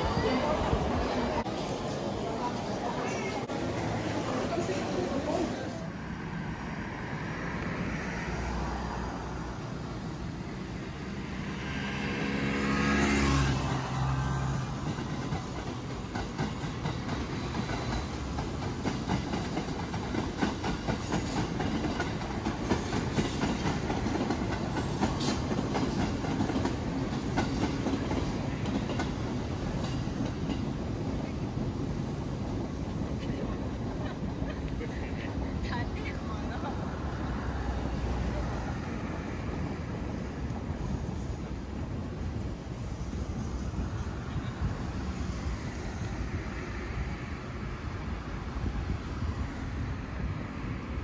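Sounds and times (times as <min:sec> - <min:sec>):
train low steady tones: 0:00.0 - 0:11.8.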